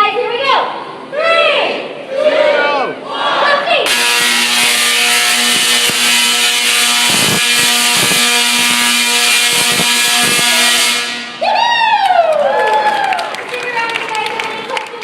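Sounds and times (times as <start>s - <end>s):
steady hum: 0.0s - 12.1s
tesla coil buzzing crackle: 3.9s - 11.4s
crowd whooping and shouting: 11.3s - 13.7s.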